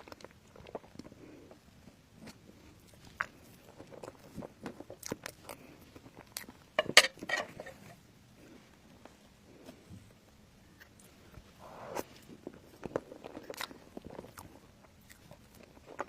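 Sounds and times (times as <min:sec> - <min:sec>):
food crunching: 0:00.0 - 0:08.0, 0:12.0 - 0:16.0
person chewing: 0:00.0 - 0:08.0, 0:11.8 - 0:16.0.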